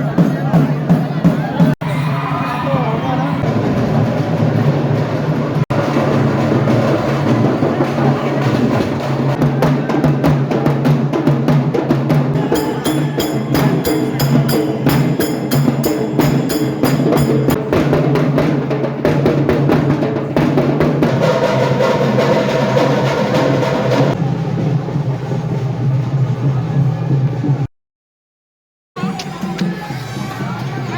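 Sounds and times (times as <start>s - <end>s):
drum band beating: 0.0s - 1.8s, 3.4s - 27.7s
high ringing: 12.4s - 17.6s.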